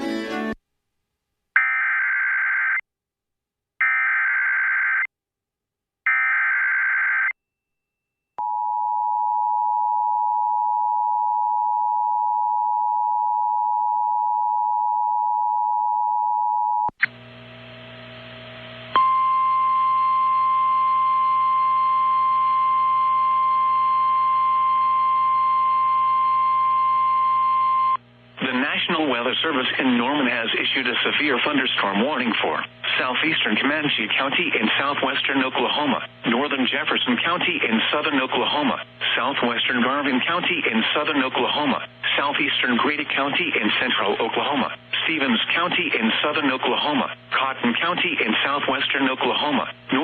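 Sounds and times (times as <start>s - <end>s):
radio receiver hiss and hum: 28.1s - 50.0s.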